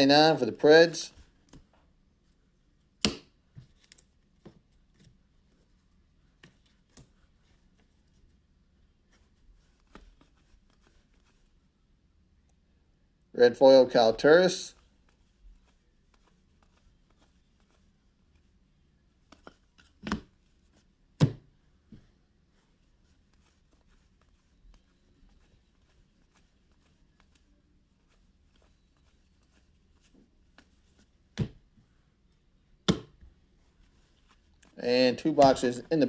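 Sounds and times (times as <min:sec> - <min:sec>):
cards rustling: 0:09.0 - 0:11.6, 0:14.2 - 0:18.5, 0:22.5 - 0:31.4, 0:33.7 - 0:36.0.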